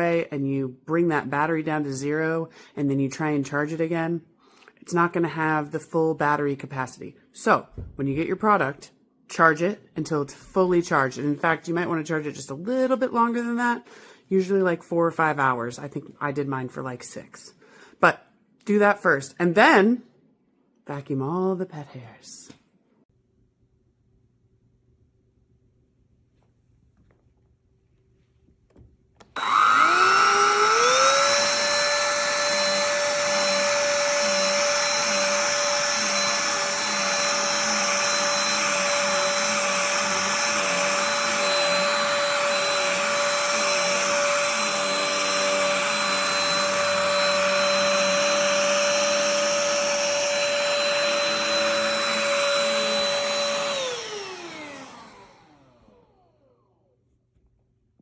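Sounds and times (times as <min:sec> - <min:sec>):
handheld vacuum motor whine: 0:29.4 - 0:56.9.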